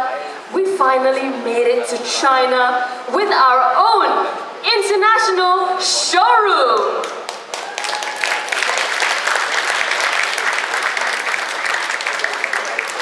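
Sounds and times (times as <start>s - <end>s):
audience applauding: 7.0s - 13.0s.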